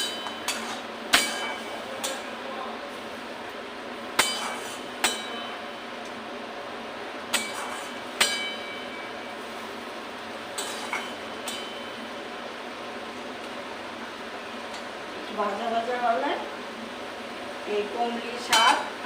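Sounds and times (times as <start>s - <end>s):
metal utensil clinking on pan: 0.0s - 2.3s, 4.2s - 5.6s, 7.3s - 8.9s, 10.6s - 11.9s, 18.5s - 18.9s
spices sizzling in oil: 0.0s - 19.0s.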